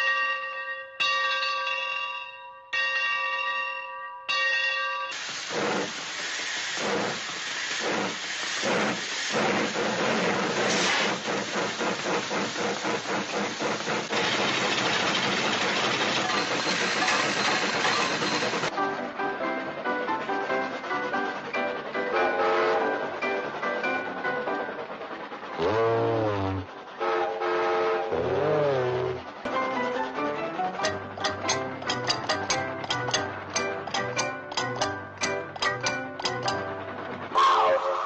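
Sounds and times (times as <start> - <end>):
steam hiss: 5.1 - 18.7
steam train chugging puffs: 5.1 - 38.0
bell ringing: 16.2 - 18.7.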